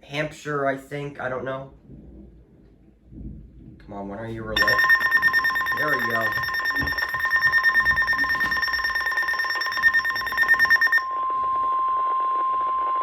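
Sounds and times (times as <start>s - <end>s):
steady alarm tone: 4.6s - 11.1s.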